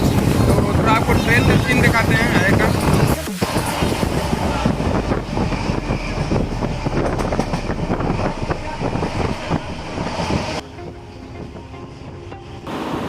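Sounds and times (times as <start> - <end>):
wind buffeting microphone: 0.0 - 12.3
train wheels rattling: 4.3 - 10.6.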